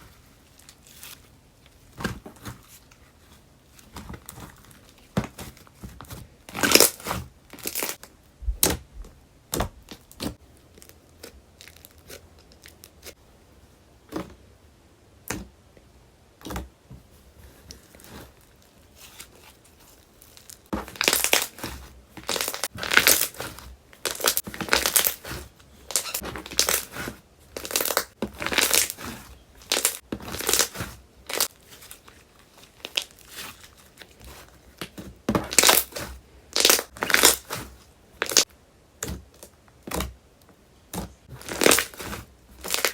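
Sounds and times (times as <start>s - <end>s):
slime squishing and popping: 20.4s - 25.3s, 38.2s - 40.1s, 40.9s - 42.9s.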